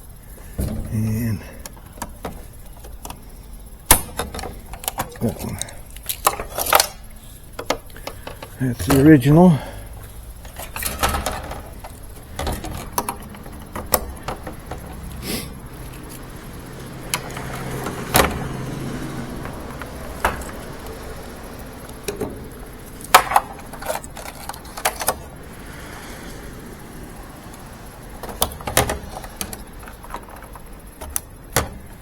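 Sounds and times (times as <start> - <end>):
clatter of small plastic parts: 4.2 - 9.0, 23.1 - 25.4.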